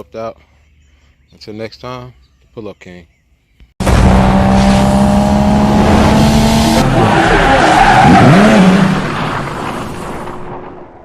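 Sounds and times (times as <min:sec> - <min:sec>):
car engine running: 0:03.8 - 0:07.0.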